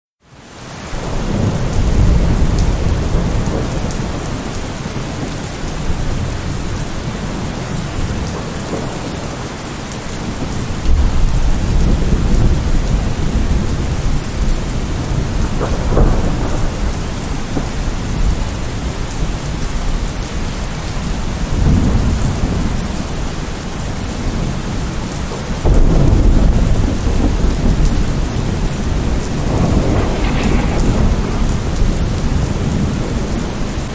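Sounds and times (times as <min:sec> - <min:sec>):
heavy rain falling: 0:00.3 - 0:33.9
thunder rumbling: 0:01.0 - 0:09.4, 0:10.3 - 0:33.9.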